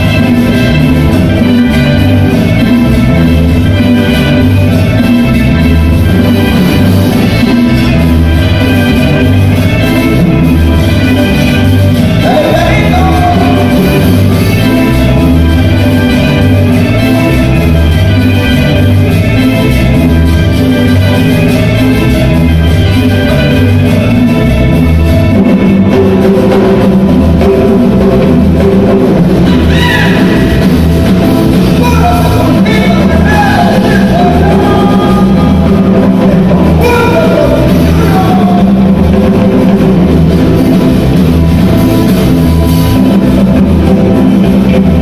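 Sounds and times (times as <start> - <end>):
loud music with drum beat: 0.0 - 45.0
person singing: 12.1 - 14.8, 31.7 - 39.2.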